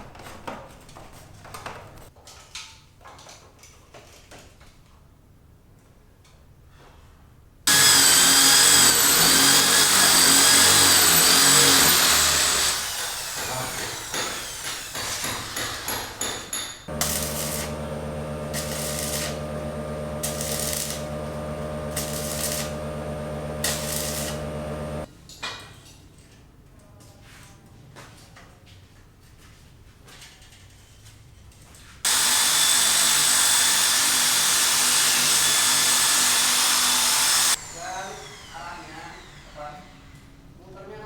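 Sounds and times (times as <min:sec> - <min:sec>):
motor running: 0:07.7 - 0:13.4, 0:16.9 - 0:25.1
power tool grinding: 0:07.7 - 0:16.3, 0:16.9 - 0:25.1, 0:32.1 - 0:40.3.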